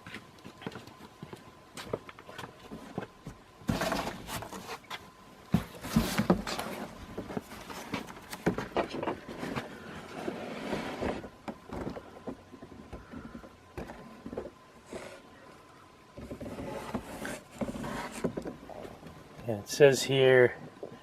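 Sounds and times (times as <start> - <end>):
cardboard box scraping and rustling: 3.7 - 11.4, 16.2 - 18.9.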